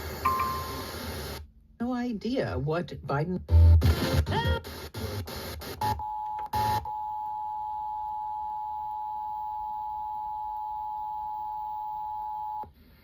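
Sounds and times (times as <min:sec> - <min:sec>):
choppy broadcast audio: 0:00.0 - 0:06.9
two-tone alert signal: 0:00.3 - 0:00.9.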